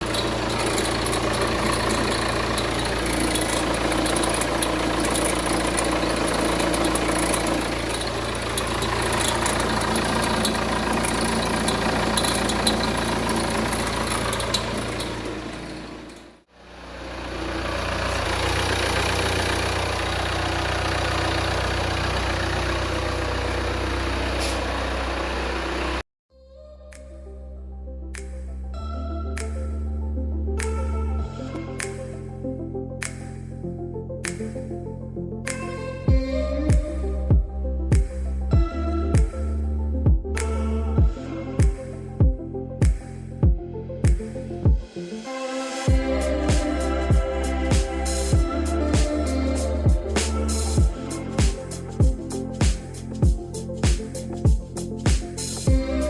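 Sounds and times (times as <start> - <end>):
diesel engine idling: 0.0 - 26.0, 45.9 - 56.0.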